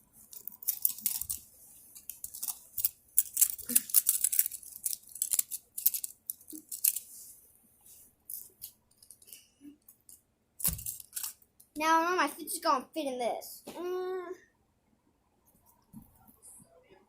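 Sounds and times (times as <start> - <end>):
plastic toys rustling and crinkling: 0.0 - 11.4.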